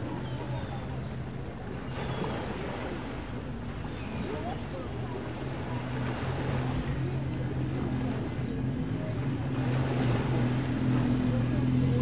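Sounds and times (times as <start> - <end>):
outdoor background noise: 0.0 - 12.0
engine humming: 5.0 - 12.0.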